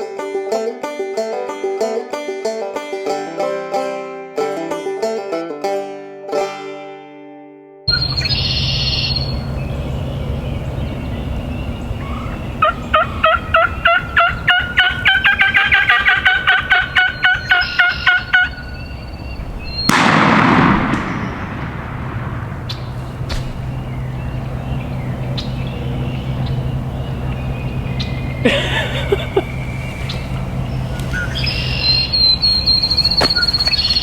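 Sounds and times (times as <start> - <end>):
turkey yelping: 7.9 - 20.0, 23.8 - 34.0.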